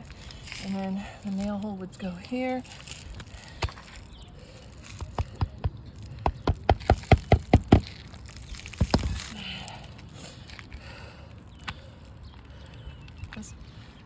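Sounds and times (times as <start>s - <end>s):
hammer striking nail into shingle: 5.0s - 7.9s.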